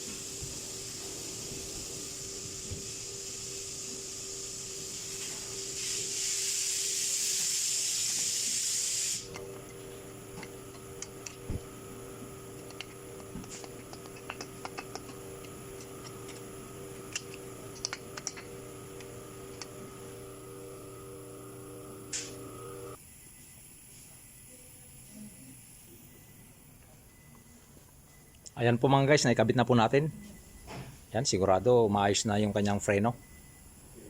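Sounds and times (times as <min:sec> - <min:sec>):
pressurised hiss: 0:00.0 - 0:09.4.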